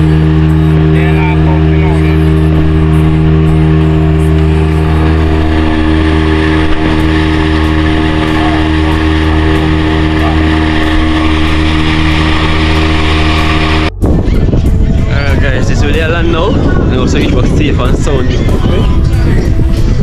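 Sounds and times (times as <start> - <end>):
boat motor running: 0.0 - 20.0
wind and water spray: 1.6 - 20.0.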